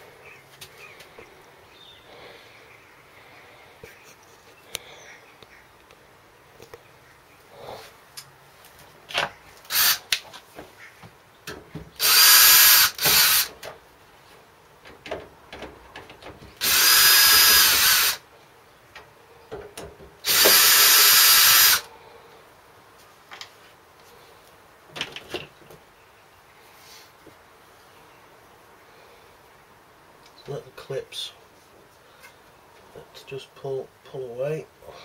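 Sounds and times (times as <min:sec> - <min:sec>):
clicks and handling knocks: 0:14.8 - 0:16.6, 0:18.9 - 0:20.2.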